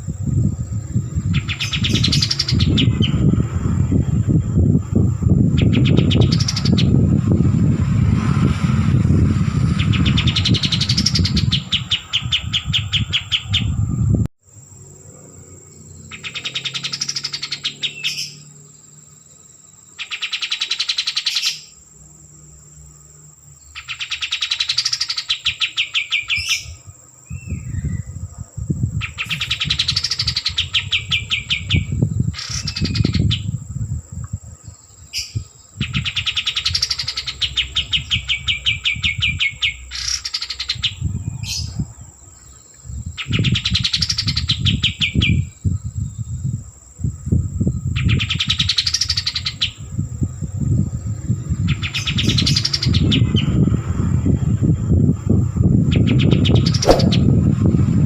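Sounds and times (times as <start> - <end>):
bird singing trilling song: 0.0 - 57.9
low rumble: 2.5 - 12.0, 56.6 - 58.0.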